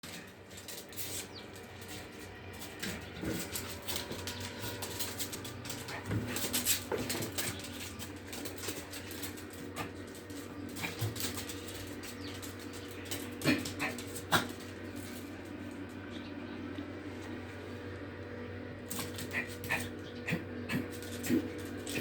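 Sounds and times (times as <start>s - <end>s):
pets rustling and knocking: 0.0s - 16.2s
steady low hum: 0.0s - 22.0s.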